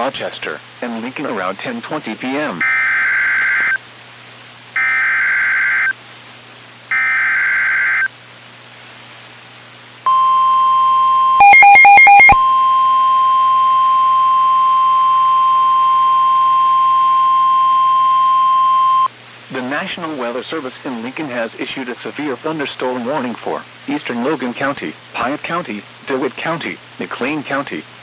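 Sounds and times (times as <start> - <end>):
steady warning alarm tone: 4.8 - 5.9, 6.9 - 8.1, 11.4 - 19.1
stepping electronic tones: 11.3 - 19.1.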